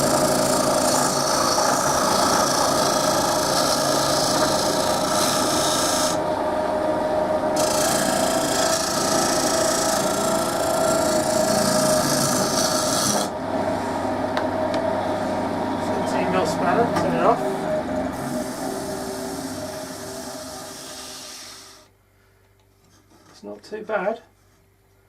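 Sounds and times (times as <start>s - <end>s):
turning tool scraping wood: 0.0s - 6.2s, 7.6s - 13.3s
wood lathe motor hum: 0.0s - 21.9s.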